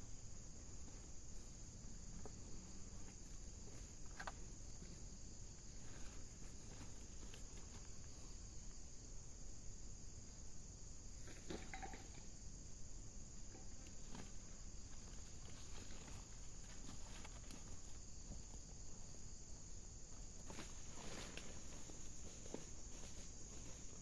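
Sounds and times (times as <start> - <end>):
insects chirring: 0.0 - 24.0
soft clicks and rustles: 13.5 - 19.0.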